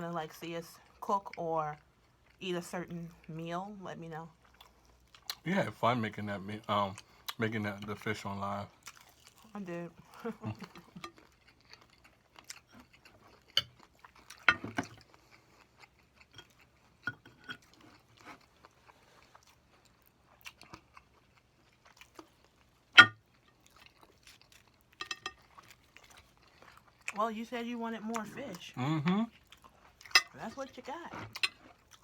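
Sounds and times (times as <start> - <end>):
crunchy chewing: 8.7 - 27.2, 29.3 - 30.2, 31.2 - 32.0.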